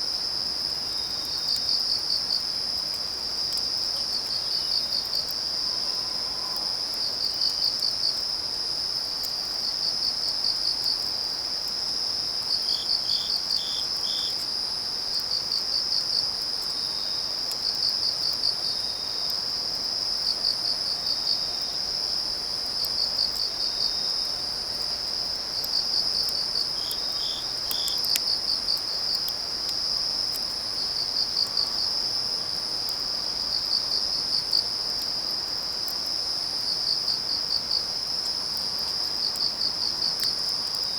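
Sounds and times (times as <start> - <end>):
lower cricket chirping: 0.0 - 40.9
high-pitched insect trill: 25.6 - 31.9.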